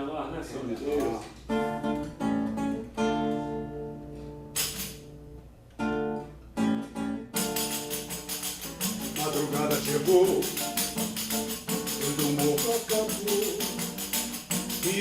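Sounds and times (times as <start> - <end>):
acoustic guitar strumming: 1.4 - 15.0
tambourine jingling: 7.4 - 15.0.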